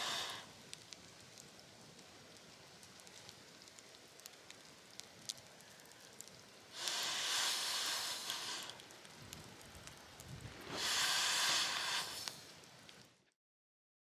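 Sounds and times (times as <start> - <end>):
loud hissing bursts: 0.0 - 0.6, 6.6 - 8.9, 10.3 - 12.7
campfire crackling: 0.0 - 13.4.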